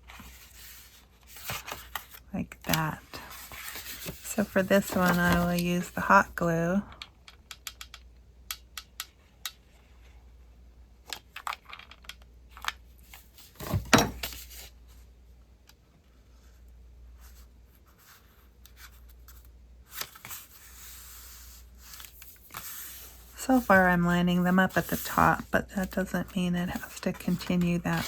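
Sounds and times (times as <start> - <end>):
paper rustling: 3.2 - 5.9.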